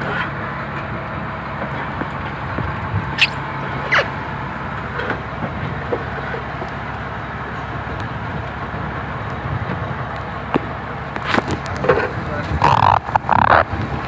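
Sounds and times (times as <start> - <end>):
boat engine running: 0.0 - 14.0
short falling squeak: 3.2 - 4.2.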